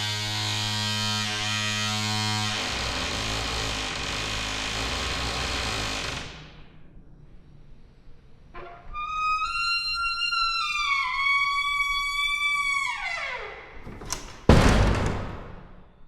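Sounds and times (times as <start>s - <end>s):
door hinge creaking: 0.4s - 6.2s, 9.0s - 15.9s
loud thump: 13.9s - 15.9s.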